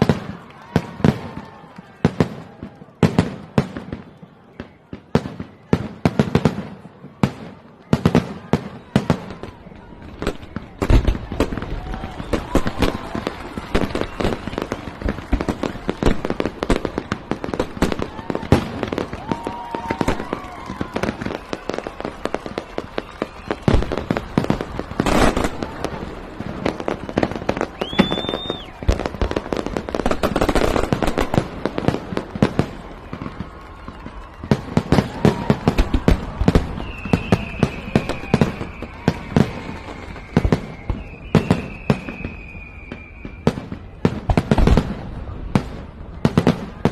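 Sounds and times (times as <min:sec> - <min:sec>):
firework whistle: 0:00.0 - 0:46.9
fireworks popping and crackling: 0:00.0 - 0:46.9
heavy firework bangs: 0:00.0 - 0:46.9
long falling whistle: 0:08.4 - 0:15.6, 0:17.5 - 0:31.9, 0:32.5 - 0:44.5.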